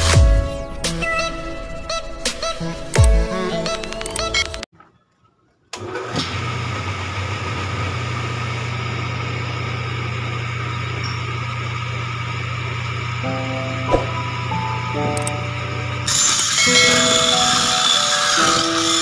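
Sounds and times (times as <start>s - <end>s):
motor humming: 8.5s - 19.0s.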